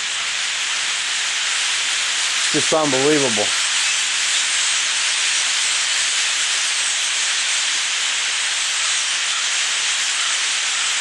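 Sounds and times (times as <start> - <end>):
huge flock of blackbirds calling: 0.0 - 7.8.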